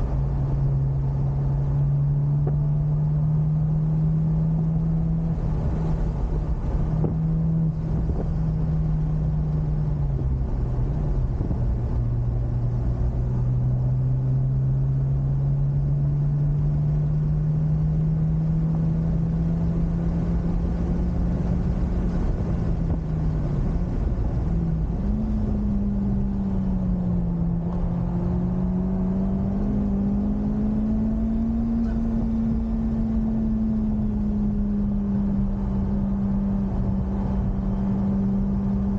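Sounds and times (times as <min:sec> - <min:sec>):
car engine at speed: 0:00.0 - 0:38.9
road and tyre rumble: 0:00.0 - 0:38.9.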